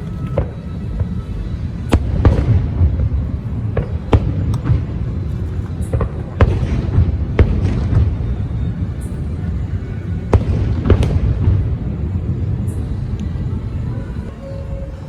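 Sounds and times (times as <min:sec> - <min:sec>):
music: 0:00.0 - 0:15.0
fireworks bangs: 0:00.3 - 0:09.1, 0:10.2 - 0:13.1.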